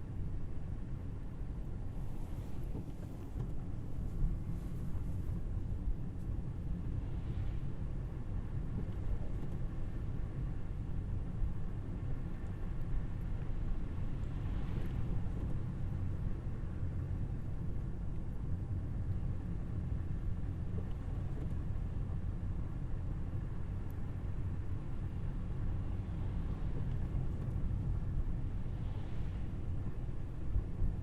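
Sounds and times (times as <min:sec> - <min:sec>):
road and tyre rumble: 0:00.0 - 0:31.0.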